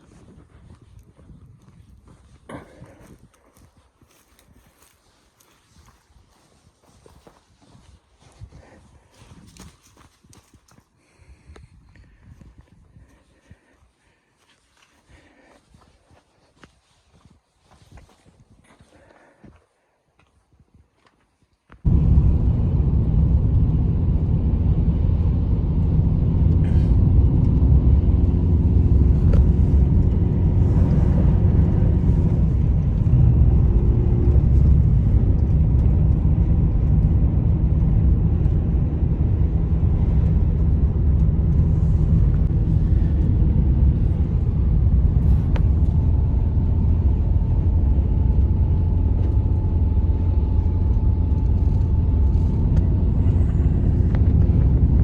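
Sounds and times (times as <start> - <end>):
blizzard wind rumbling: 21.8 - 55.0.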